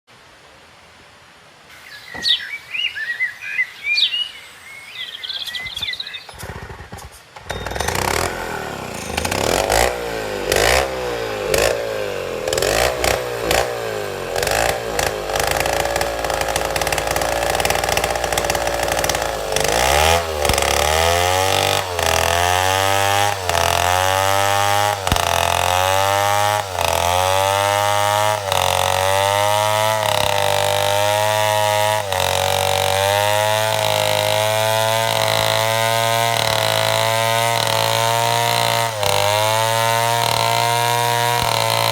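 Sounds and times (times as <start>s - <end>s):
chainsaw cutting timber: 5.7s - 41.9s.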